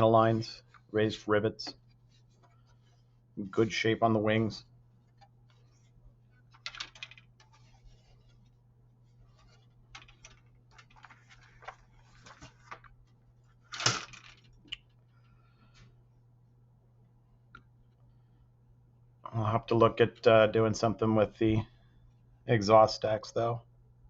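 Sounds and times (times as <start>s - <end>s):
plastic parts clicking and rustling: 6.5s - 7.8s, 9.5s - 12.9s, 13.6s - 15.0s.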